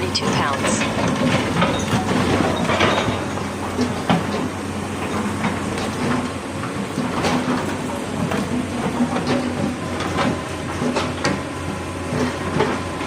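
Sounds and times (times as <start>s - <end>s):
diesel engine running: 0.0s - 13.0s
metallic clanks and knocks: 0.2s - 7.7s.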